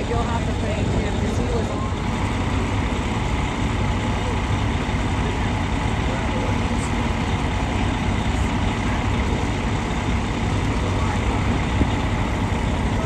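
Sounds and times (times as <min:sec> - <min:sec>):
heavy engine idling: 0:00.0 - 0:13.0
wind buffeting microphone: 0:10.1 - 0:12.9.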